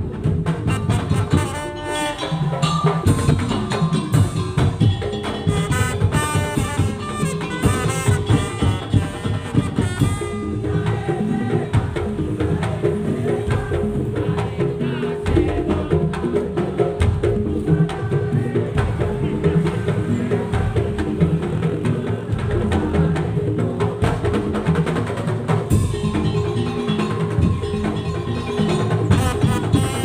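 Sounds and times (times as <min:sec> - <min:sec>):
wooden slit drums and drums: 0:00.0 - 0:30.0
high melodic line: 0:00.8 - 0:11.3, 0:25.7 - 0:30.0
held tone: 0:01.5 - 0:10.8, 0:25.7 - 0:30.0.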